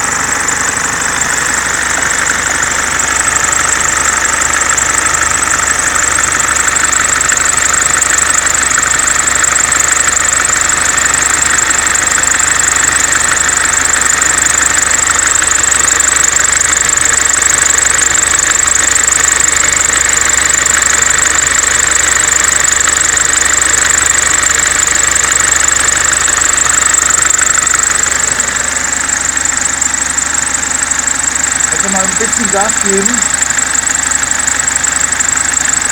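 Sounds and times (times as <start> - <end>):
diesel engine idling: 0.0 - 35.9
high-pitched belt drive noise: 0.0 - 35.9.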